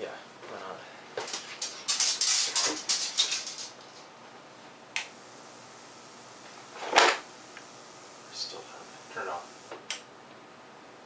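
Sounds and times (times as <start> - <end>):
electric sparks crackling: 1.6 - 3.8, 5.0 - 9.7
sharp electric snap: 5.0 - 8.1.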